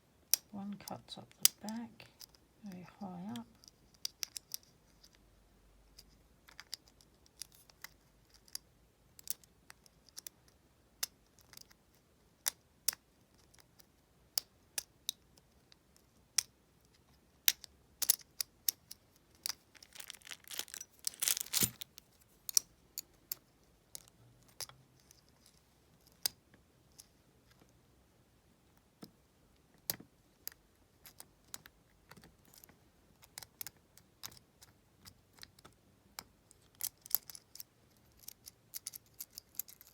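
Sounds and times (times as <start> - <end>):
lock picks clicking in lock: 17.5 - 22.7, 36.7 - 39.9.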